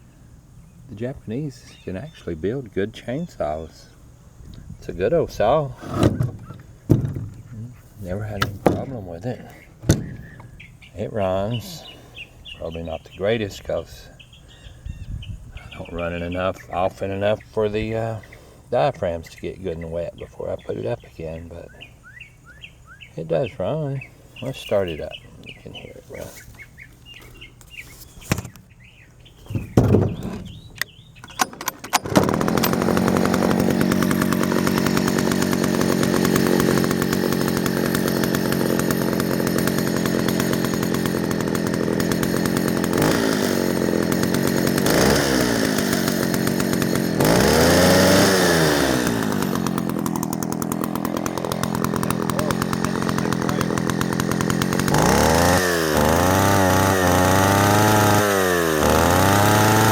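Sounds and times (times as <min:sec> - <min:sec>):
chainsaw engine revving: 0:04.9 - 0:12.2, 0:31.4 - 0:59.9
chainsaw pull cord pulls: 0:05.3 - 0:10.6, 0:29.6 - 0:59.9.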